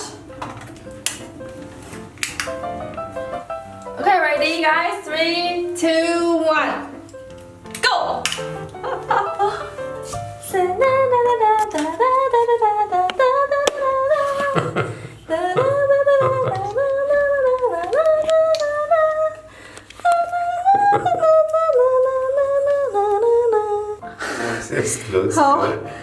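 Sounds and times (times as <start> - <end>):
person humming a tune: 8.8 - 24.5.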